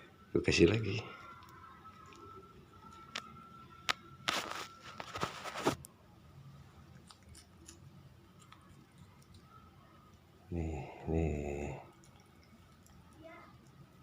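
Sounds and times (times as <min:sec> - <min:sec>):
cat crunching dry treat: 0:06.9 - 0:09.6.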